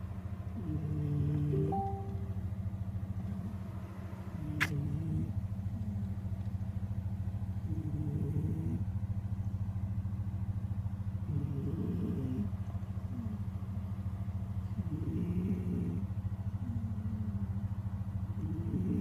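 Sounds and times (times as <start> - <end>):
cat snoring: 0.6 - 1.7, 4.4 - 6.1, 7.6 - 8.9, 11.3 - 13.4, 14.8 - 17.6, 18.4 - 19.0.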